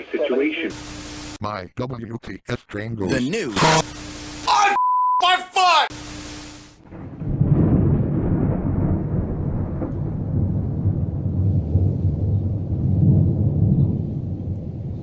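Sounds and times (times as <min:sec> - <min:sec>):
thunder rumbling: 0:06.8 - 0:15.0.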